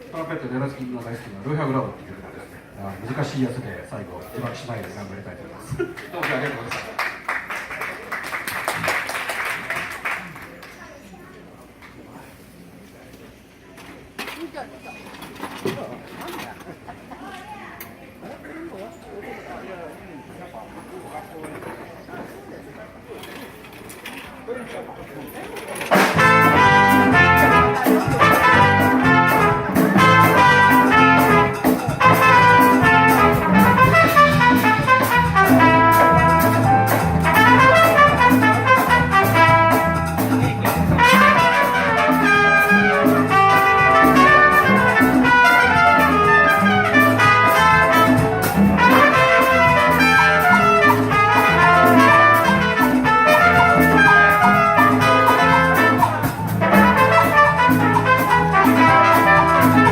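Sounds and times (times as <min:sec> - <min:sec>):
instrumental accompaniment: 0:25.8 - 0:59.9
trumpet playing jazzy melody: 0:25.9 - 0:59.9
steady bass line: 0:26.1 - 0:59.9.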